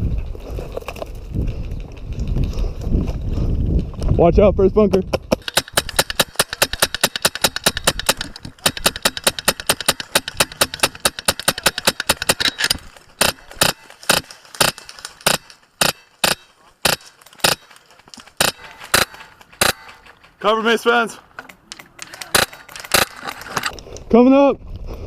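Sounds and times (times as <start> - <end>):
airsoft guns firing: 5.2 - 20.2, 22.0 - 23.7.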